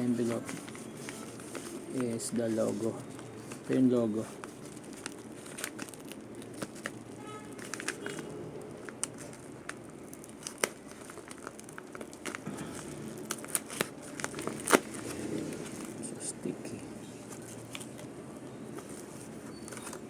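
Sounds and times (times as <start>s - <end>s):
envelope packaging crinkling: 0.0s - 20.0s.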